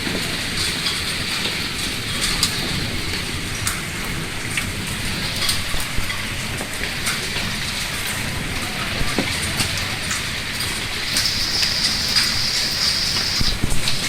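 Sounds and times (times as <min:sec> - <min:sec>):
downpour of hail and rain: 0:00.1 - 0:14.0
hailstones ticking: 0:11.0 - 0:14.0.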